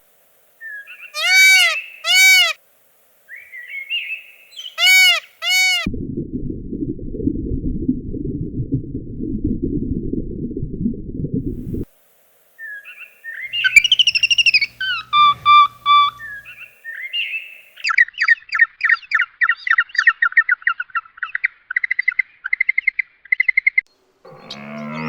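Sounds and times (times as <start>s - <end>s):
bird singing: 0.6s - 2.6s, 3.3s - 5.9s, 12.6s - 23.7s, 24.3s - 25.0s.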